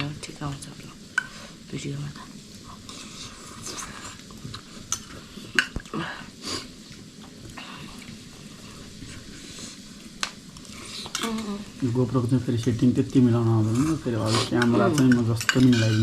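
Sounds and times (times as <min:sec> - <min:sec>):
faint steady hiss: 0:00.0 - 0:16.0
utensils clinking and scraping dishes: 0:14.2 - 0:16.0.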